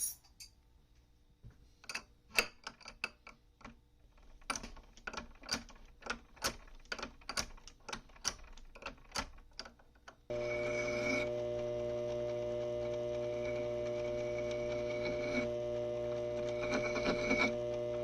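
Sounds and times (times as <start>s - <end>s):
machine tool motor hum: 10.3s - 18.0s.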